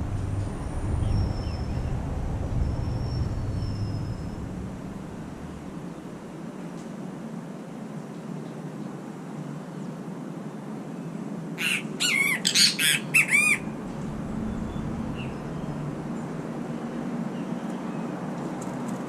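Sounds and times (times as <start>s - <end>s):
low background hum: 0.0s - 7.8s, 10.9s - 19.0s
bird calling loudly: 11.6s - 13.8s.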